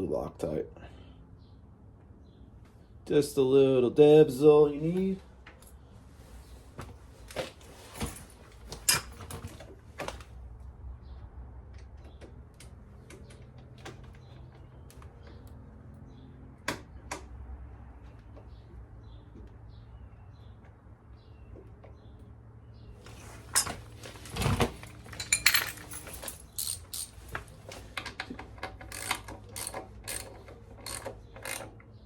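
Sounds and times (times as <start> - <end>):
metal parts and tools clicking: 23.4 - 31.8.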